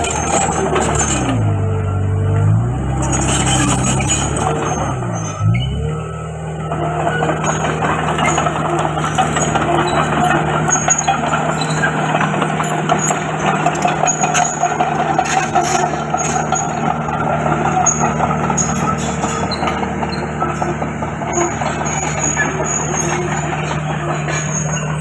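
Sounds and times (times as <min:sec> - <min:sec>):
steel tracks rattling and clanking: 0:00.0 - 0:01.5, 0:06.8 - 0:25.0
bulldozer diesel engine running: 0:00.0 - 0:25.0.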